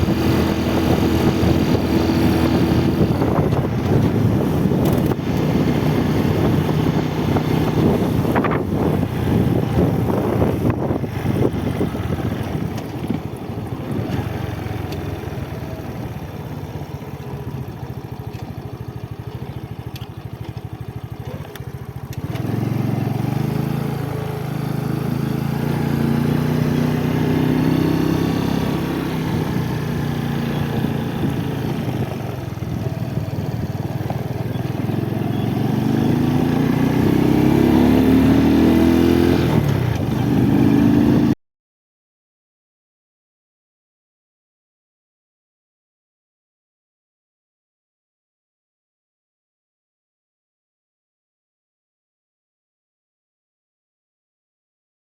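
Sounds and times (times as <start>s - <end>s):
motorcycle engine shifting gears: 0.0s - 41.4s.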